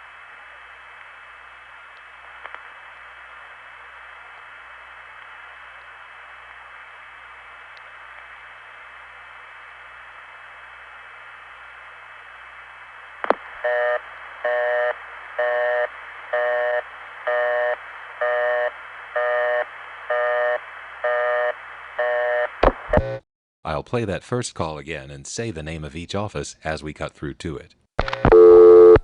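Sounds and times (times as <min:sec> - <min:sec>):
telephone busy signal: 0:13.6 - 0:23.2, 0:28.0 - 0:29.0
telephone line hiss: 0:13.6 - 0:23.2, 0:28.0 - 0:29.0.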